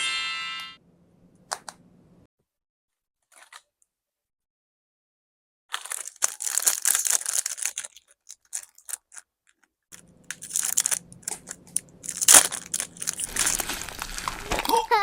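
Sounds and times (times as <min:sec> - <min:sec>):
packaging crinkling and tearing: 0:05.7 - 0:15.0.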